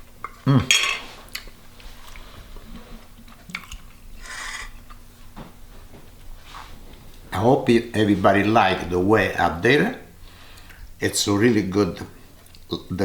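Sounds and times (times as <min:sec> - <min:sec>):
man chewing: 0:00.0 - 0:05.4, 0:12.3 - 0:12.7.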